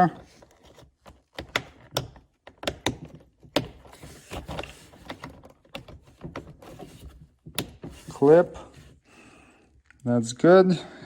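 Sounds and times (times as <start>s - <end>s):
plastic clicks and knocks: 0.2s - 8.2s.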